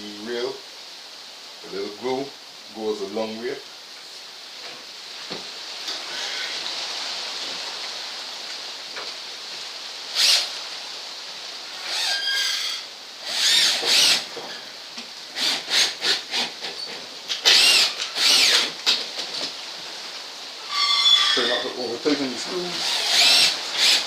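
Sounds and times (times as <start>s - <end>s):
power drill driving screws into wood: 10.1s - 10.6s, 11.8s - 14.6s, 15.3s - 19.5s, 22.8s - 24.0s.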